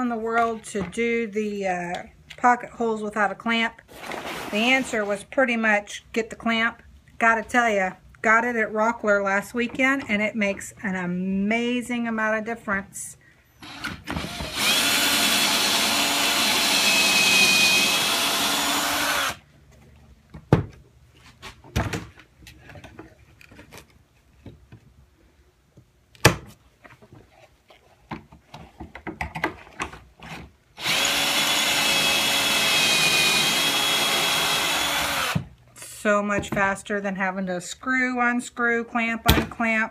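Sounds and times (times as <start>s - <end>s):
cordless drill drilling wood: 13.6s - 19.4s, 30.8s - 35.5s.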